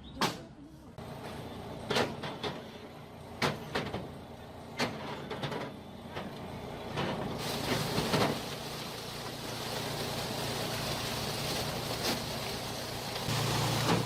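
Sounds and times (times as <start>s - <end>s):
machine engine running: 4.1s - 14.0s.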